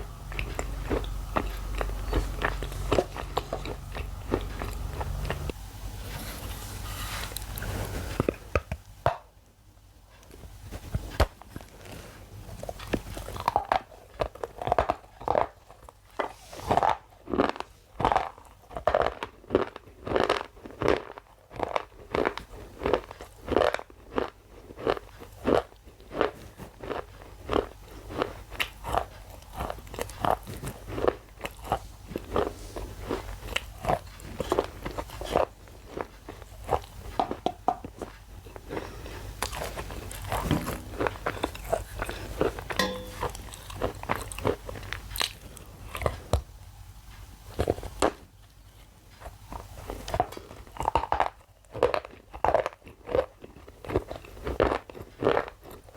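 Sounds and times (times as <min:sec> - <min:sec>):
shale crunching as chewed: 0:00.0 - 0:08.8, 0:10.2 - 0:46.5, 0:47.5 - 0:55.9.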